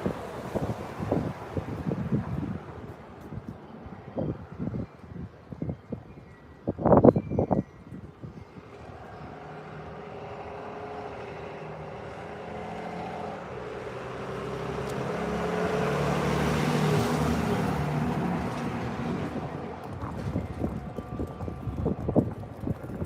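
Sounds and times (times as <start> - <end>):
vehicle engine approaching: 8.3 - 23.0.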